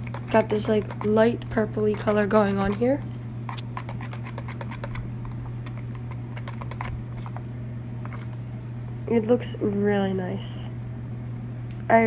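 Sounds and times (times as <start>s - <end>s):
mixture stirring clicks and taps: 0.0s - 7.4s
steady low hum: 0.0s - 12.0s.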